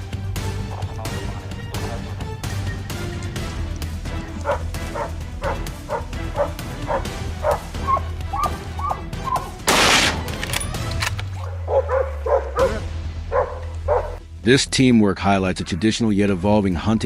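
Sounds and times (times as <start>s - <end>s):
background music: 0.0s - 17.0s
dogs barking: 0.2s - 9.6s, 11.3s - 14.2s.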